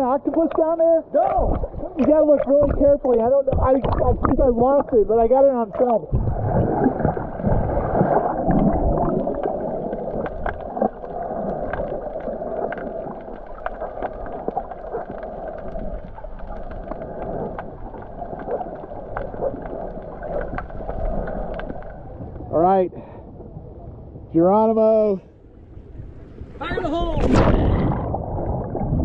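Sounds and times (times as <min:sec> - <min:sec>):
underwater crackling clicks: 0:00.2 - 0:06.3, 0:08.0 - 0:22.5.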